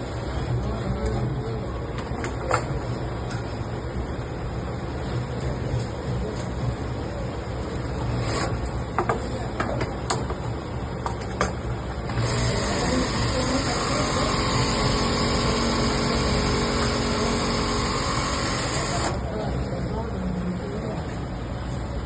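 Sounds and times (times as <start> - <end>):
sharp clicks and knocks: 11.0 - 11.6
industrial sewing machine running: 12.1 - 19.5.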